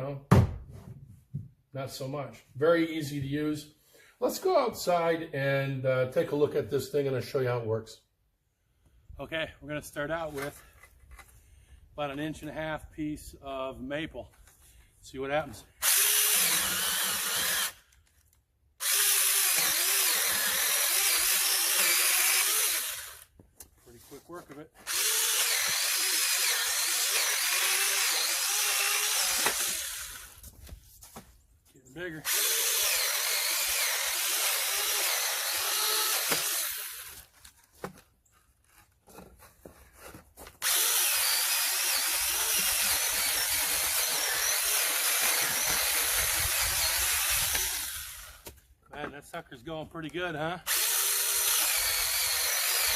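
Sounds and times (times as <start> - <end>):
chainsaw cutting wood: 15.8 - 18.1, 18.8 - 23.4, 24.8 - 30.5, 32.2 - 37.3, 40.6 - 48.6, 50.7 - 52.9.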